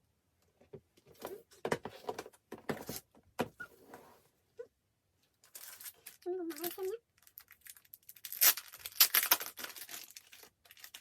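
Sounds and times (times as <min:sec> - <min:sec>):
plastic and paper crinkling: 0:05.4 - 0:11.0.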